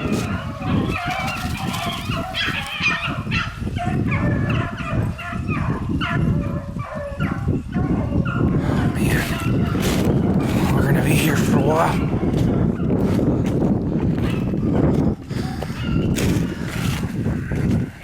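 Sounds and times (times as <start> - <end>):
dogs baying: 0.0 - 18.0
wind on microphone: 0.0 - 18.0.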